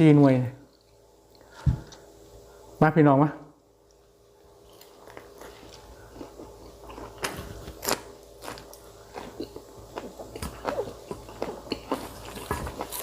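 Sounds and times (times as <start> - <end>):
person chewing wetly: 4.6 - 13.0.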